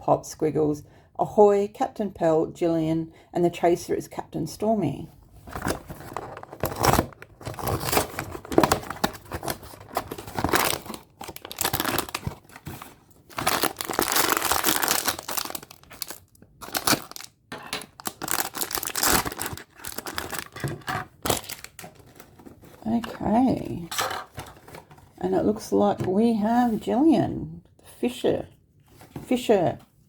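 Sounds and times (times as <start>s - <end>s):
packaging tearing and crinkling: 5.5s - 22.3s.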